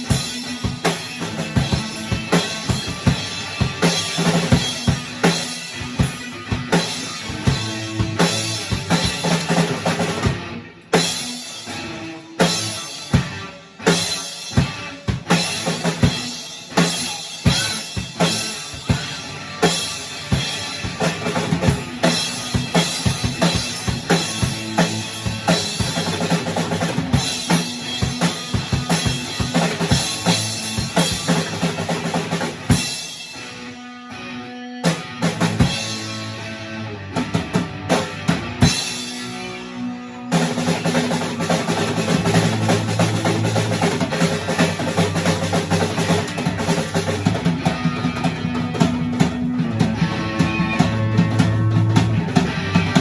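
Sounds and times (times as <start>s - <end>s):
drum kit fast beat: 0.0s - 33.7s, 34.8s - 36.4s, 37.2s - 53.0s
band music: 0.0s - 53.0s.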